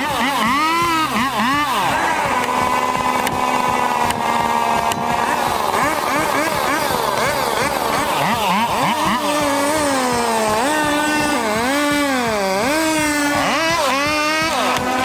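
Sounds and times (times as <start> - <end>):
chainsaw cutting wood: 0.0 - 15.0.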